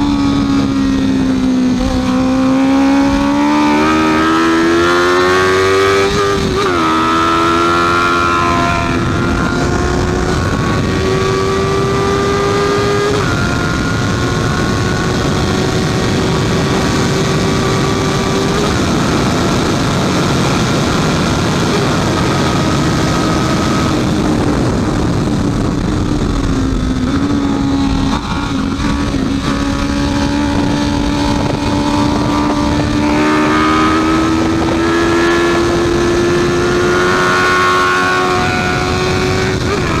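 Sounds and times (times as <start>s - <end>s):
motorcycle engine revving: 0.0s - 40.0s.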